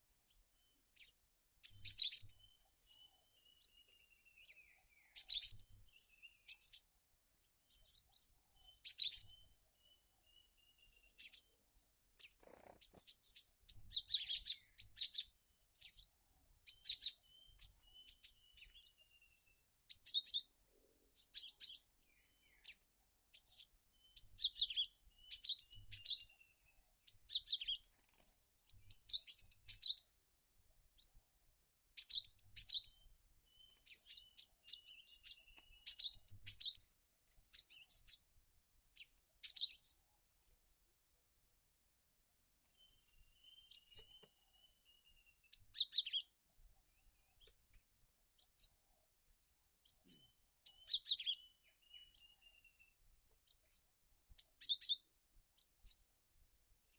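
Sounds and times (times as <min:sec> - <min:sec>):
birds chirping sharply: 0:00.0 - 0:06.9, 0:07.6 - 0:20.5, 0:32.0 - 0:37.0.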